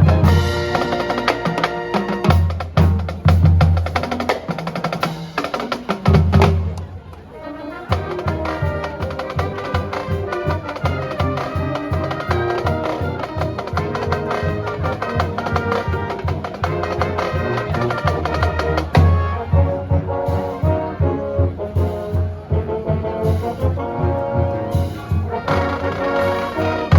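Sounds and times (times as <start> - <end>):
steady drum beat: 0.0 - 7.2, 7.9 - 26.9
wind band playing upbeat piece: 0.0 - 26.9.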